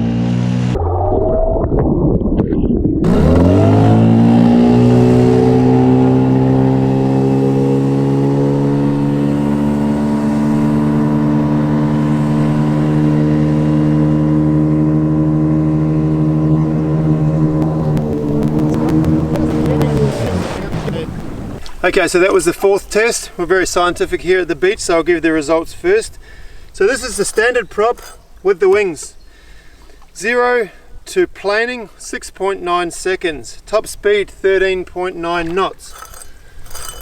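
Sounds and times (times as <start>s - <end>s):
outboard motor at full throttle: 3.0s - 21.6s.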